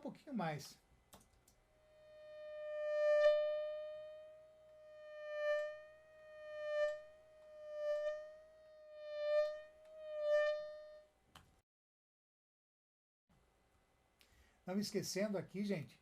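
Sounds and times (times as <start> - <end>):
synthesized mosquito whine: 1.7 - 11.2.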